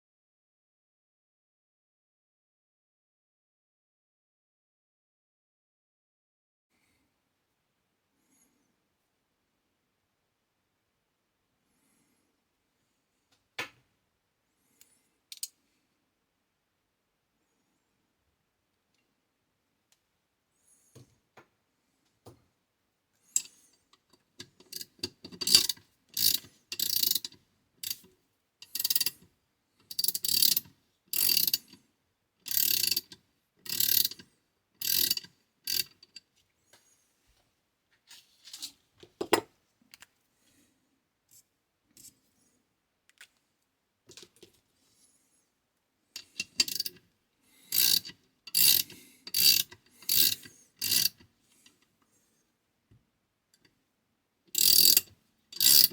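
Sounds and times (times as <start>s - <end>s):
ratchet wrench clicking: 24.7s - 29.2s, 29.9s - 31.7s, 32.4s - 34.2s, 34.8s - 36.2s, 46.2s - 47.0s, 47.7s - 51.2s, 54.5s - 55.9s.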